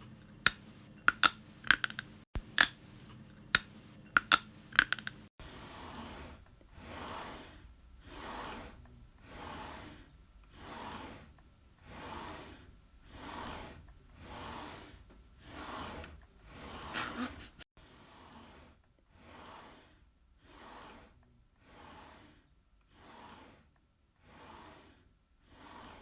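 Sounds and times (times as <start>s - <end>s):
heavy breathing: 16.5s - 17.6s.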